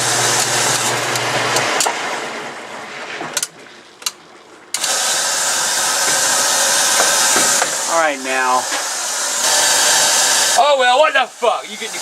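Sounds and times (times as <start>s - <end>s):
blower rushing hiss: 0.0s - 3.5s, 4.7s - 12.0s.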